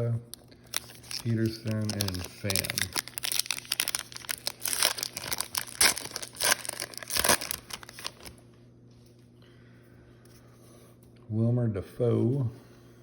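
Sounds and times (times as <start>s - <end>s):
foil wrapper crinkling and tearing: 0.4s - 8.4s.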